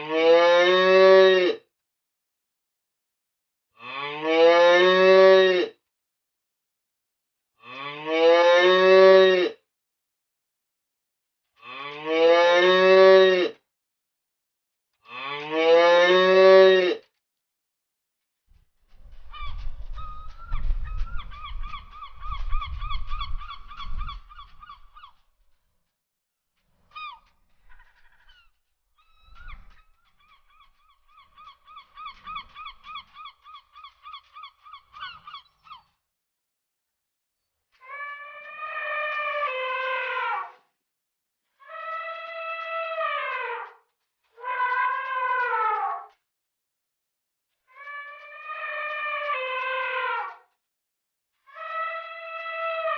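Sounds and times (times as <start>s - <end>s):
cow mooing: 15.1s - 17.0s.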